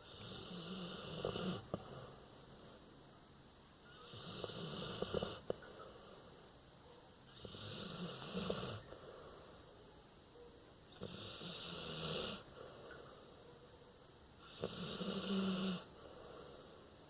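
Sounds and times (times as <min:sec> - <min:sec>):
person snoring: 0:04.1 - 0:05.5, 0:11.0 - 0:12.4, 0:14.4 - 0:15.9.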